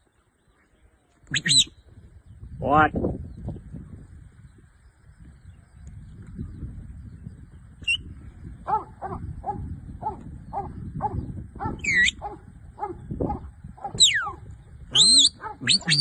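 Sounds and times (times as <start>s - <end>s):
dog barking: 8.7s - 14.0s, 15.4s - 15.7s
high sliding call: 15.0s - 16.0s.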